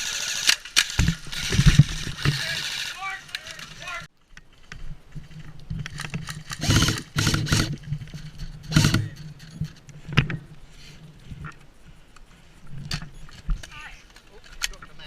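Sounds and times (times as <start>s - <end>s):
steady low hum: 0.0s - 15.0s
airsoft gun bursts: 6.5s - 7.8s.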